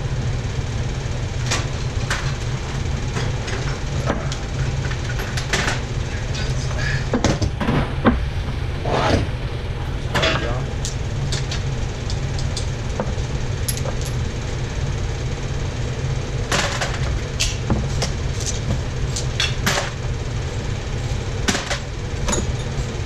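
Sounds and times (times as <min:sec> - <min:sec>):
low hum: 0:00.0 - 0:23.0.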